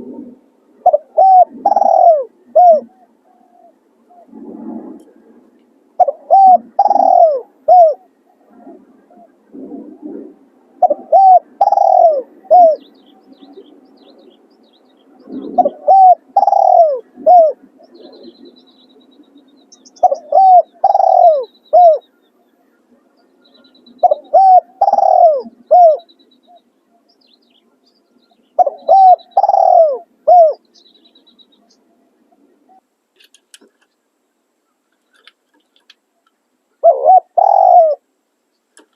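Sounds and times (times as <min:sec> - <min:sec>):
dove cooing: 0:00.0 - 0:05.4, 0:06.0 - 0:13.8, 0:15.2 - 0:18.6, 0:19.8 - 0:26.7, 0:28.4 - 0:30.8, 0:36.8 - 0:38.1.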